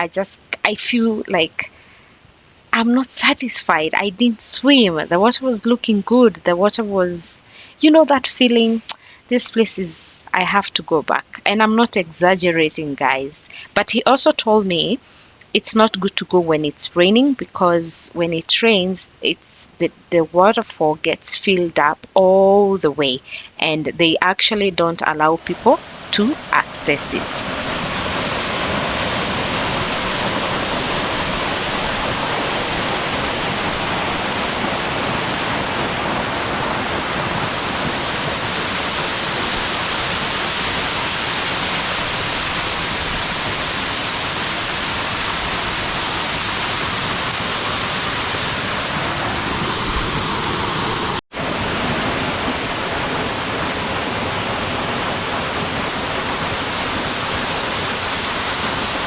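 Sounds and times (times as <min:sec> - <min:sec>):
waterfall pouring: 0:25.4 - 0:59.0.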